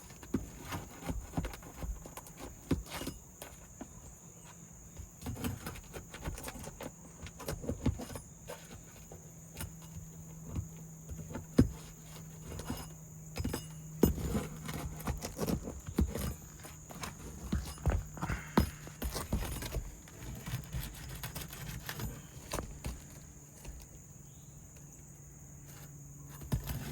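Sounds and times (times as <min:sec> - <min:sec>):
tools knocking on shingle roof: 0:05.0 - 0:23.8.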